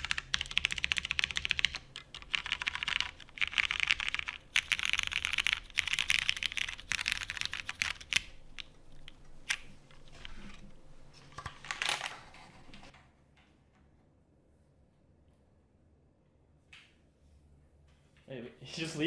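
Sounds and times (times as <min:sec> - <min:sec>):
typing on mechanical keyboard: 0:00.0 - 0:09.6.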